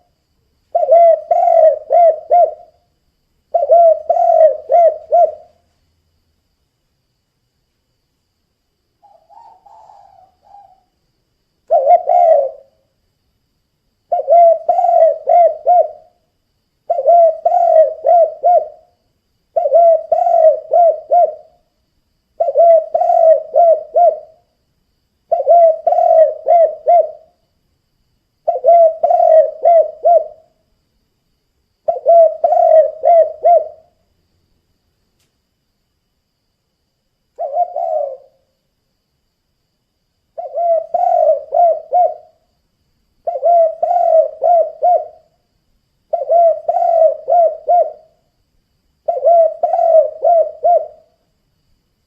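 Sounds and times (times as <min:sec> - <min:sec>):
dove cooing: 0:00.7 - 0:02.8, 0:03.5 - 0:05.6, 0:09.0 - 0:10.9, 0:11.7 - 0:12.8, 0:14.1 - 0:16.2, 0:16.9 - 0:21.6, 0:22.4 - 0:24.4, 0:25.3 - 0:27.3, 0:28.4 - 0:30.5, 0:31.8 - 0:34.0, 0:37.4 - 0:38.5, 0:40.4 - 0:42.4, 0:43.2 - 0:45.3, 0:46.1 - 0:48.2, 0:49.0 - 0:51.2.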